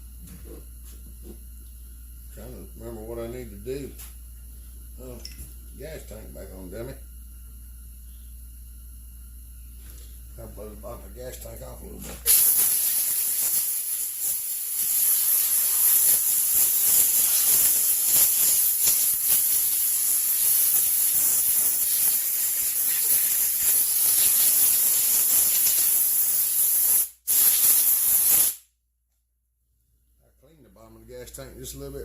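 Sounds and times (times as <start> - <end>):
compressed air hissing: 12.0 - 28.6.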